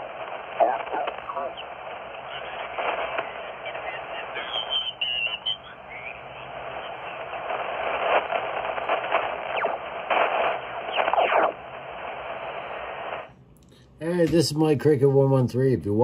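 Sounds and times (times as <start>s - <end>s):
radio static hiss: 0.0s - 13.3s
radio sliding whistles: 3.8s - 13.2s.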